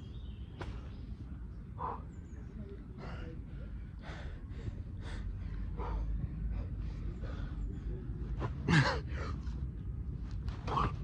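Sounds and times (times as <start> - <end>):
man breathing hard: 3.0 - 7.9.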